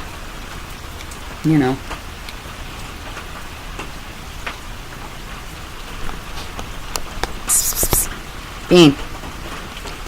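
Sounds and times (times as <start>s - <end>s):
rain hissing: 0.1s - 9.8s.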